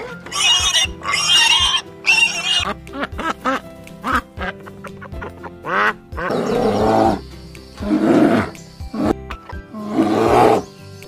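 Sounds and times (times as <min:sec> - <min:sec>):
background music: 0:00.0 - 0:11.0
large animal roaring: 0:06.3 - 0:07.2, 0:07.8 - 0:09.2, 0:09.8 - 0:10.6.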